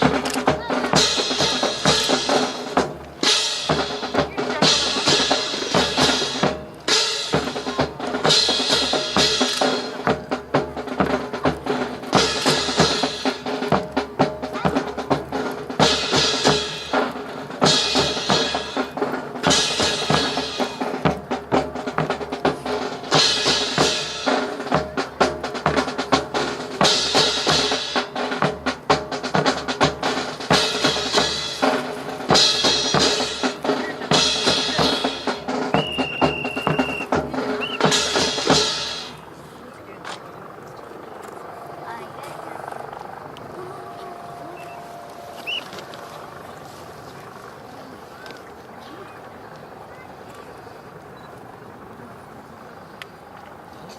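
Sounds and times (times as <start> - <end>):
snare and bass drum hits: 26.8 - 39.2
steady high tone: 41.3 - 47.0.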